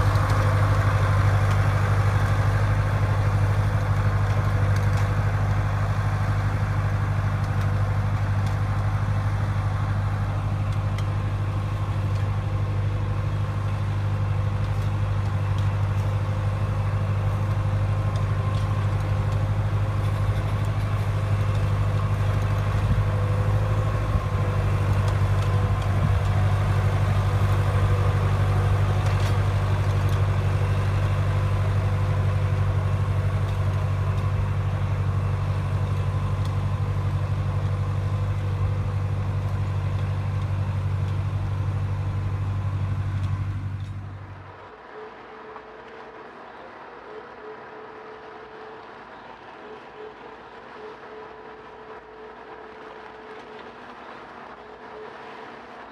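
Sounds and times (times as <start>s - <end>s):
engine droning: 0.0s - 55.9s
faint steady whine: 0.0s - 55.9s.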